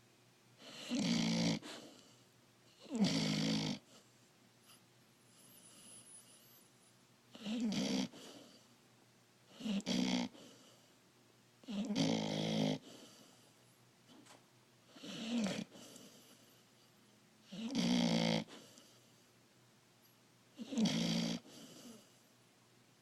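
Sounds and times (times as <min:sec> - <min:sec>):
puppy snoring: 0:00.6 - 0:04.1, 0:04.7 - 0:06.7, 0:07.3 - 0:08.7, 0:09.5 - 0:10.9, 0:11.6 - 0:13.5, 0:14.8 - 0:16.6, 0:17.4 - 0:19.1, 0:20.5 - 0:22.2.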